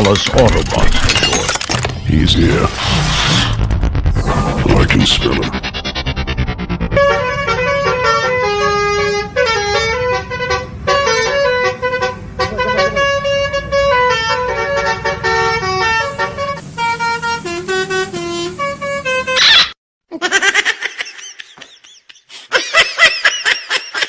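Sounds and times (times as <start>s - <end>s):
multi-tone bus horn melody: 6.9s - 19.5s.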